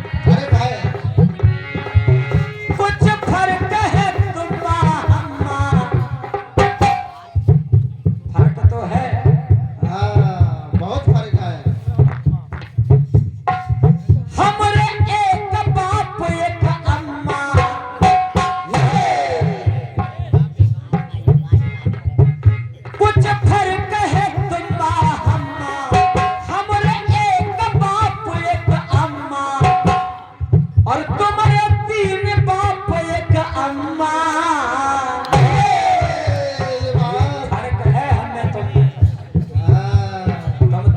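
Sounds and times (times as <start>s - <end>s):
hand drum rhythm: 0.0s - 40.9s
person singing: 13.6s - 40.9s.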